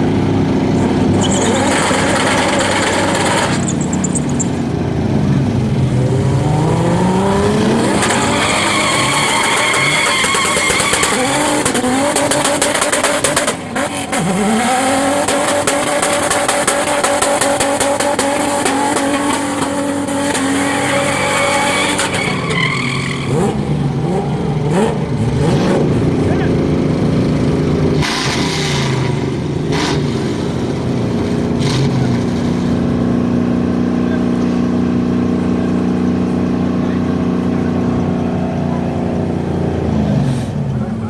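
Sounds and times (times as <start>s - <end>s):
car engine revving hard: 0.0s - 40.9s
tyres squealing: 1.2s - 4.5s, 7.8s - 11.8s, 20.2s - 23.5s.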